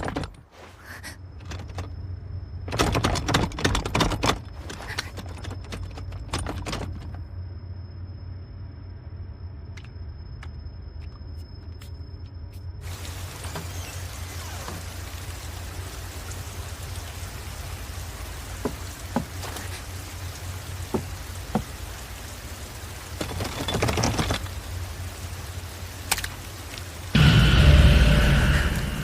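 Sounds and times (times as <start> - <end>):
steady rain: 1.4 - 1.9, 2.6 - 7.1, 12.8 - 29.0
low hum: 7.0 - 19.0, 24.4 - 29.0.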